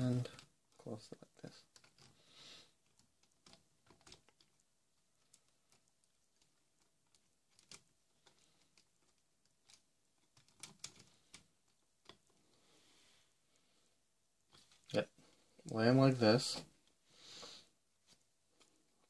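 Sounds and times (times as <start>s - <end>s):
plastic parts clicking: 2.8s - 4.6s, 5.2s - 12.3s.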